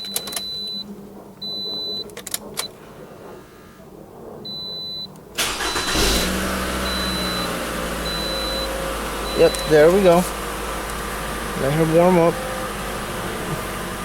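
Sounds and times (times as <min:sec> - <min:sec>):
clicks: 0:00.0 - 0:00.6, 0:09.4 - 0:10.0
car engine cranking and starting: 0:00.0 - 0:00.8, 0:05.2 - 0:14.0
high electronic beep: 0:00.0 - 0:02.1, 0:04.5 - 0:05.1, 0:06.8 - 0:09.9.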